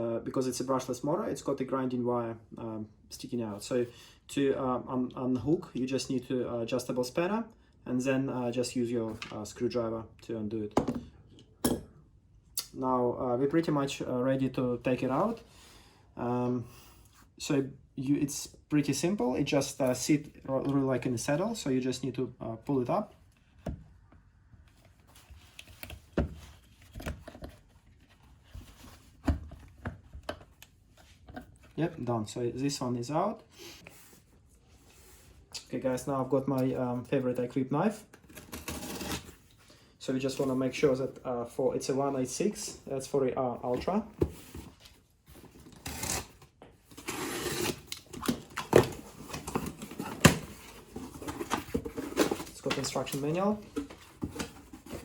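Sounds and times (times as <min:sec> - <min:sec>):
knife cutting cardboard: 0:38.3 - 0:39.3
cardboard scraping and rustling: 0:43.7 - 0:55.0.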